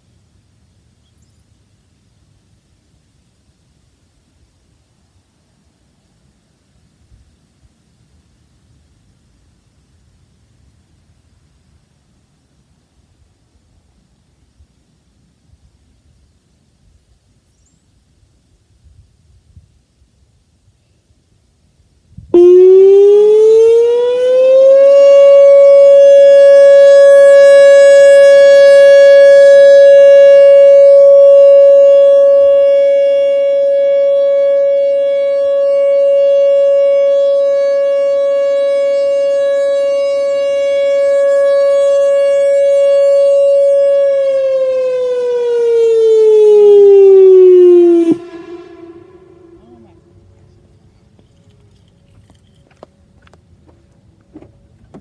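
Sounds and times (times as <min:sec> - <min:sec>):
tornado siren: 0:22.3 - 0:50.7.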